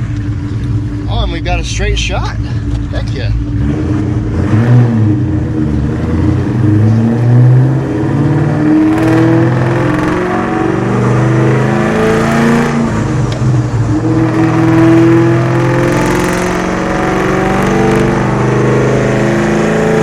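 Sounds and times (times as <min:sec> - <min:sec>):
car engine accelerating hard: 0:00.0 - 0:20.0.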